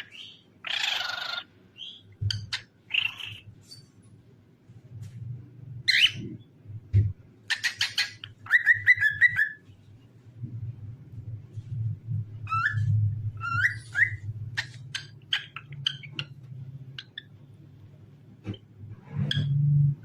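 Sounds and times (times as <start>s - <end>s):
cockatiel chirps: 7.5s - 9.6s, 12.4s - 16.3s.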